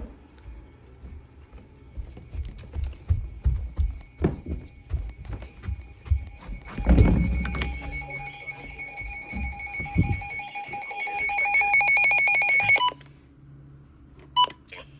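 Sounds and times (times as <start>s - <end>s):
electronic alert tone with pulsing trill: 4.4s - 12.9s.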